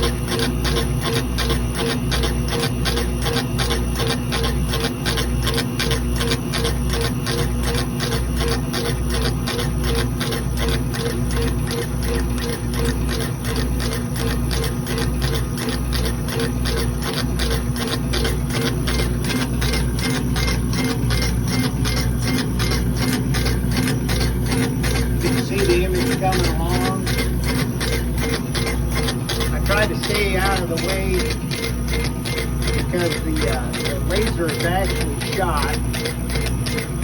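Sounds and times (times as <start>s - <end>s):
laser engraver head shuttling: 0.0s - 37.0s
stepper motors whirring and clicking: 0.0s - 37.0s
exhaust blower humming: 19.1s - 37.0s.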